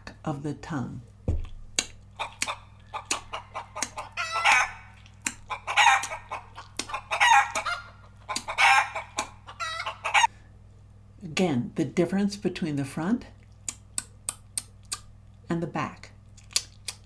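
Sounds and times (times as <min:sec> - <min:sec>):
tongue clicks: 0:01.4 - 0:07.0, 0:08.3 - 0:08.6, 0:13.4 - 0:15.1, 0:16.4 - 0:17.0
throaty tongue cluck: 0:01.8 - 0:08.6.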